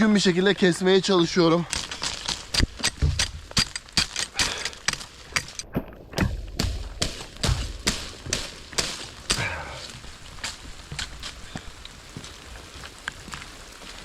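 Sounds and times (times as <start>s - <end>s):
chopping blows on wood: 6.2s - 9.6s.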